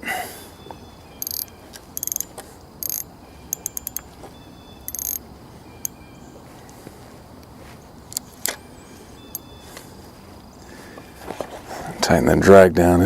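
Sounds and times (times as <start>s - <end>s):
fishing reel ratcheting: 1.2s - 4.1s, 4.9s - 5.2s.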